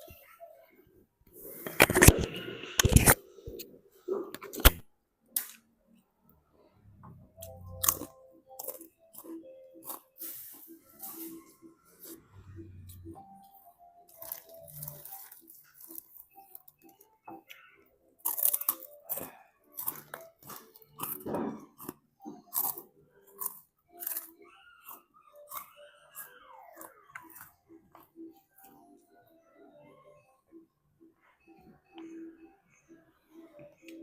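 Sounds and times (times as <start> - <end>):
person chewing with crunches: 7.4 - 12.1, 14.1 - 28.8.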